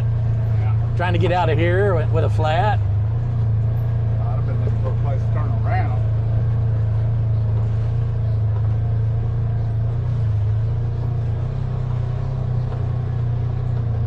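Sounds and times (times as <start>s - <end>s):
engine droning at low speed: 0.0s - 14.0s.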